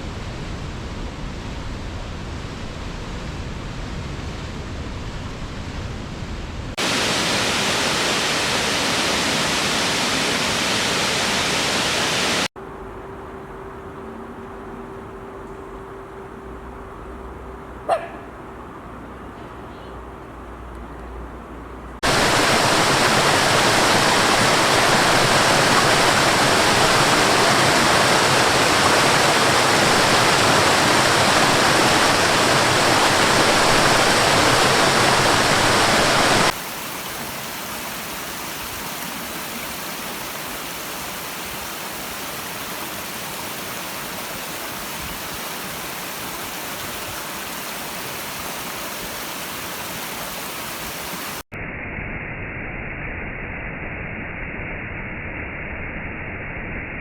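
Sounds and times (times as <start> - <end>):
waterfall rushing water: 6.8 - 12.5, 22.0 - 51.5.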